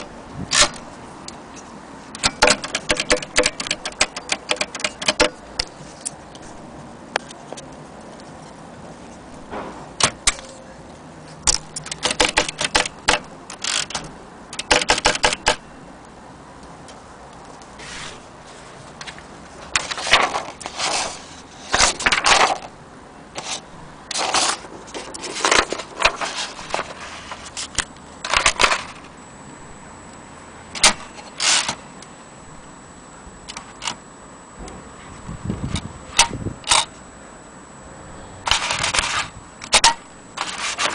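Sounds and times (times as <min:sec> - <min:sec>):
typewriter key clacks: 0:02.2 - 0:05.3, 0:11.5 - 0:14.0, 0:14.6 - 0:15.6.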